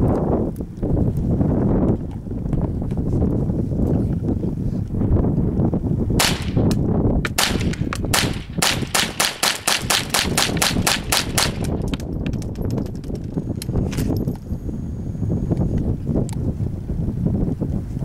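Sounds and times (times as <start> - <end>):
wind rumbling on microphone: 0.0 - 18.0
rifle shots: 6.2 - 11.9.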